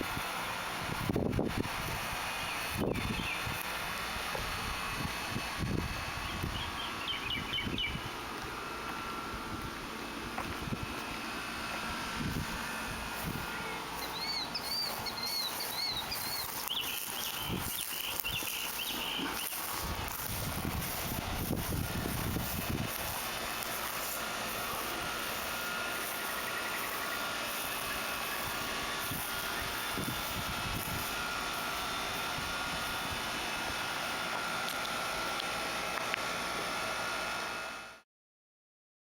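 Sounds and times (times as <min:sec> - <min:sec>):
birds chirping: 0:02.2 - 0:04.0, 0:06.1 - 0:09.0, 0:11.1 - 0:35.0.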